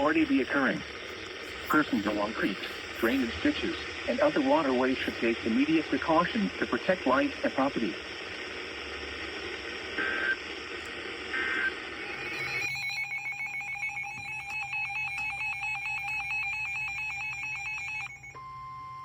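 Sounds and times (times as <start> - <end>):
radio static hiss: 0.0 - 18.0
rapid trilling electronic alert tone: 12.0 - 17.2.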